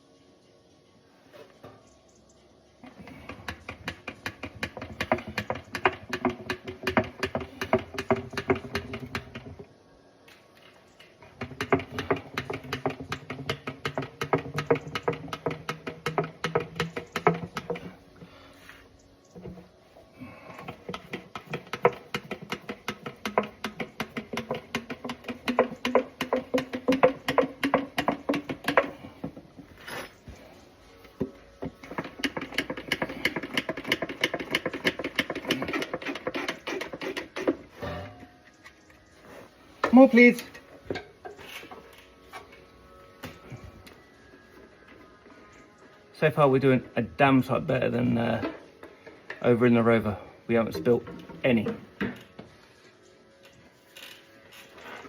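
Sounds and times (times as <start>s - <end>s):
hand oil pump clicking: 11.4s - 17.9s, 20.6s - 29.6s, 31.7s - 38.6s.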